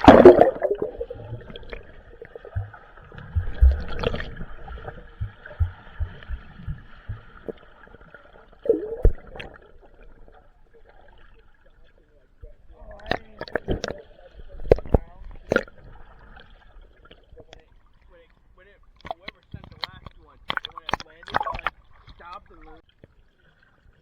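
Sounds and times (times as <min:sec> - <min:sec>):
pool water gurgling and sloshing: 0:00.0 - 0:24.0
low muffled thuds: 0:04.8 - 0:07.5.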